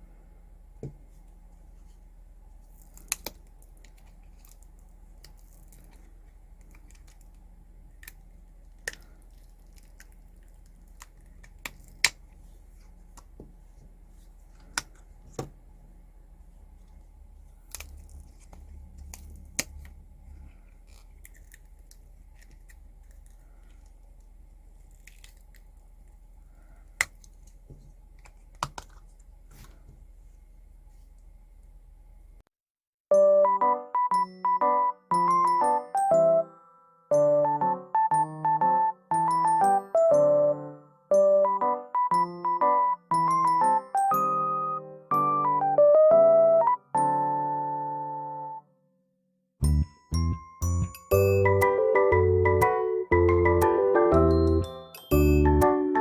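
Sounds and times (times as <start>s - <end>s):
faint steady hum: 0.0s - 32.5s.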